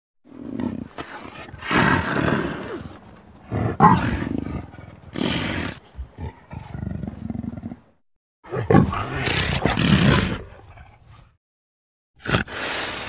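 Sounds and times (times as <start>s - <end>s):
leopard grunts: 0.3s - 7.9s, 8.5s - 11.3s
leopard calling: 0.6s - 7.3s.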